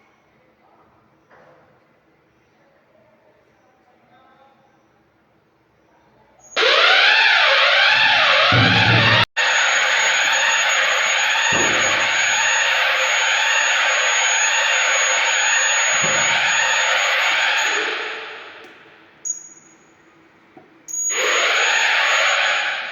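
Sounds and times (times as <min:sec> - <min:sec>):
fire alarm wavering tone: 0:06.4 - 0:20.1, 0:20.9 - 0:22.9
click: 0:18.6 - 0:18.8.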